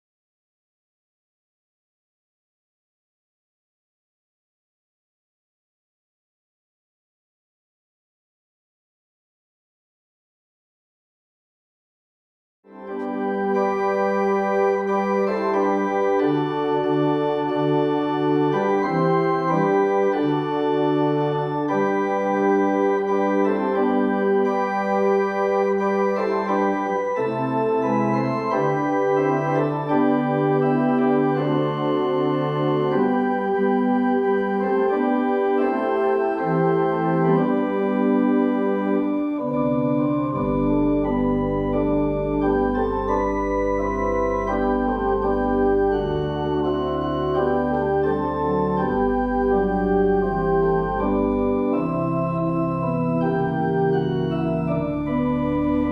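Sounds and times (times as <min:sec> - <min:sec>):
organ playing sustained chords: 0:12.8 - 0:55.9
deep organ bass notes: 0:12.9 - 0:55.9.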